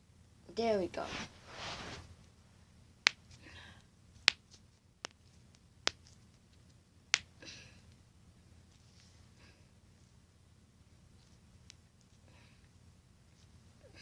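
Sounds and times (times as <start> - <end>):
knuckles cracking: 4.2 - 6.2, 7.1 - 8.0.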